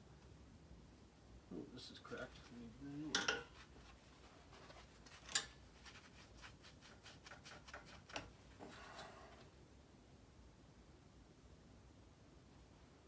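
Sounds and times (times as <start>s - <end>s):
light scrape: 3.4s - 9.5s.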